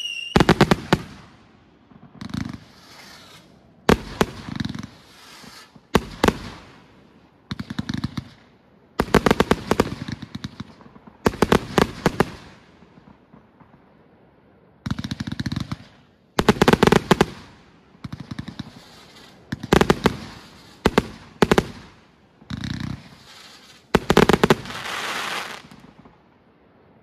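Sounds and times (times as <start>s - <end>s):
firework volleys: 0.0s - 26.9s
firework hiss: 2.4s - 7.0s, 18.4s - 21.8s, 22.6s - 26.0s.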